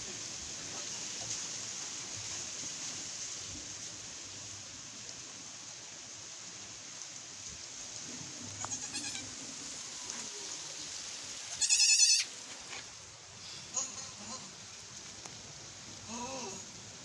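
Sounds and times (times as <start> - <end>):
goat bleating: 8.6 - 9.3, 11.5 - 12.3.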